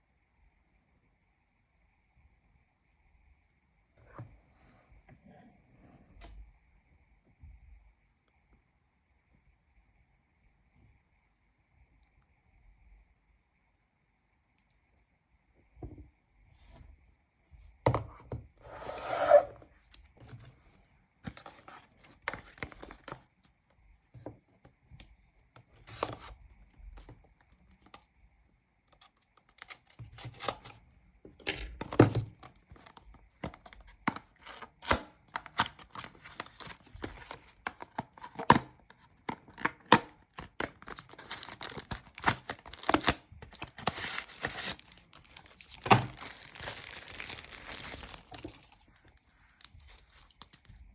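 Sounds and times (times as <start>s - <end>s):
wrapping tearing and crinkling: 34.3s - 38.5s, 39.5s - 50.8s.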